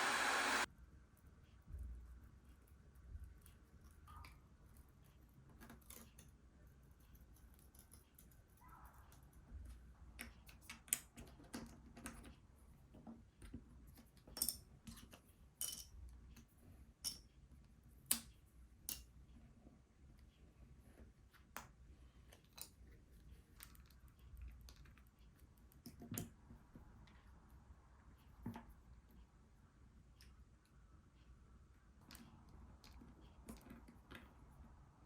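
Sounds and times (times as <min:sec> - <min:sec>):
small tools clicking and tapping: 0:05.5 - 0:09.2, 0:10.2 - 0:17.4.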